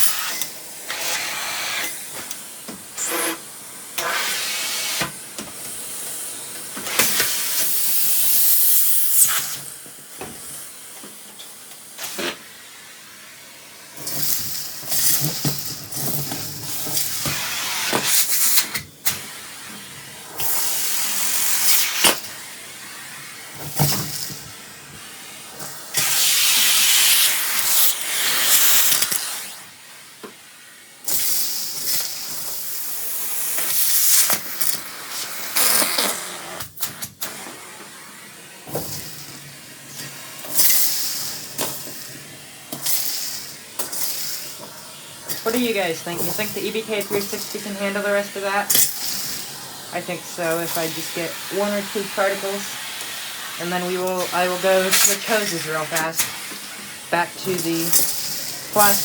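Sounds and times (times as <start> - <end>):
vacuum rushing air hiss: 0.0 - 59.0.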